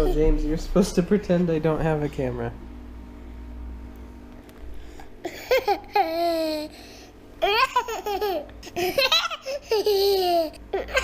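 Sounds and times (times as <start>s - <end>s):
toddler laughing and squealing: 0.0s - 0.4s, 7.4s - 11.0s.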